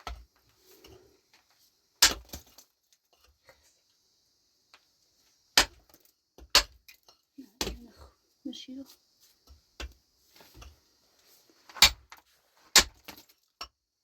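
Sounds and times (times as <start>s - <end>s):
sharp knocks of hard objects: 2.0s - 2.4s, 5.6s - 7.0s, 7.6s - 7.9s, 12.7s - 13.7s.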